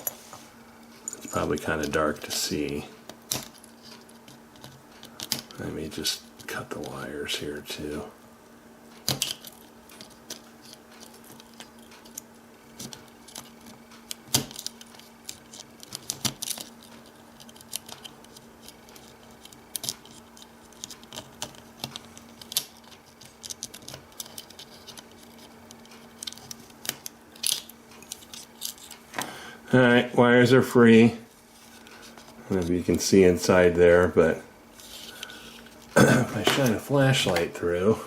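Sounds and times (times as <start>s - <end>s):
faint steady hum: 0.0s - 38.0s
small parts handled: 12.8s - 29.3s.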